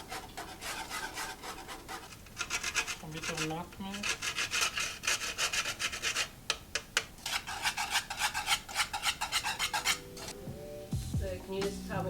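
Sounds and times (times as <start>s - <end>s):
nutmeg rasping on a grater: 0.0s - 6.3s, 7.2s - 10.0s.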